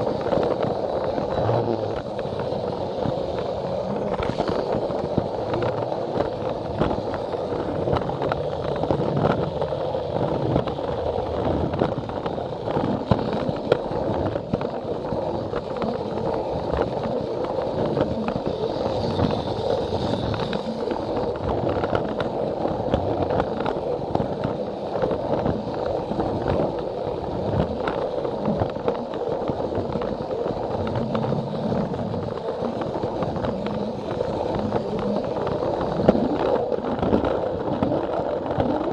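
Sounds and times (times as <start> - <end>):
wheels clicking over track joints: 0.0 - 38.9
toy train motor and gears: 12.5 - 36.6.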